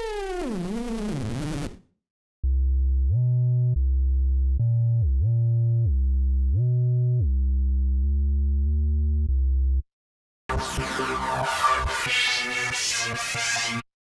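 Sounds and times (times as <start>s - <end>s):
deep synth bass gliding notes: 2.4s - 9.8s.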